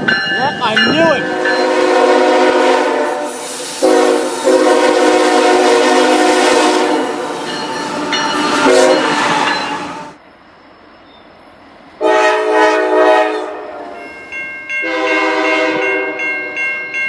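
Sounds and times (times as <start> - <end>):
passing train noise: 0.0 - 17.0
locomotive air horn blasts: 1.2 - 10.2, 12.0 - 13.9, 14.8 - 16.2.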